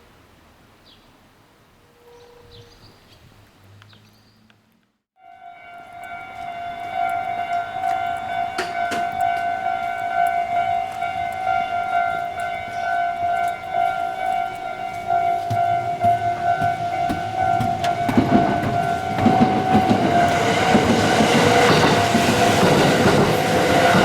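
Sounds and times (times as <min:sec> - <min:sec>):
level crossing alarm ringing: 0:05.2 - 0:24.0.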